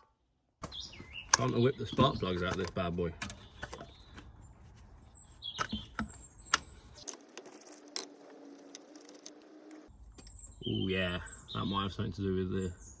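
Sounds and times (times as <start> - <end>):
metal tools clicking on engine: 0.6 - 4.0.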